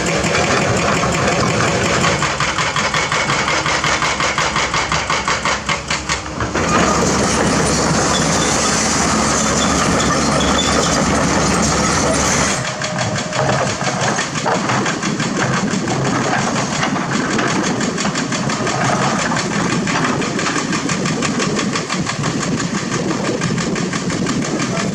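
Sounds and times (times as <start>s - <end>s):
excavator diesel engine digging: 0.0s - 24.9s.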